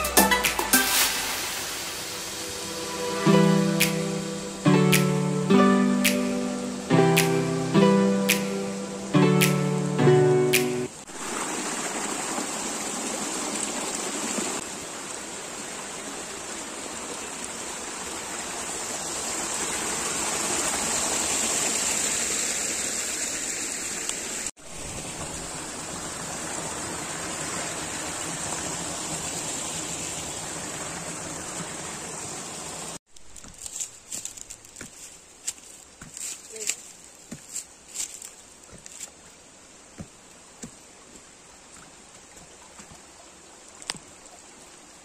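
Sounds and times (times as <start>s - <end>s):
music: 0.0s - 1.6s, 2.3s - 10.9s
running water rushing: 0.0s - 45.0s.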